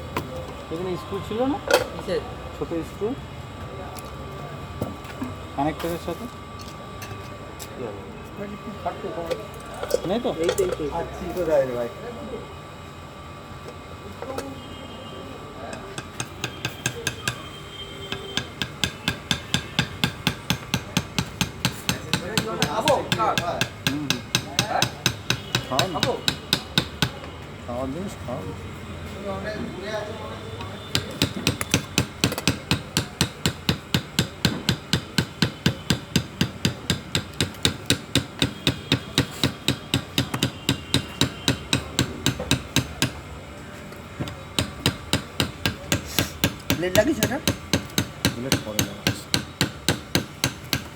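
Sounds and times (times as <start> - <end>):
hammer tapping: 15.8 - 27.3, 30.6 - 43.2, 44.2 - 50.9
quick hammer taps: 44.2 - 50.9.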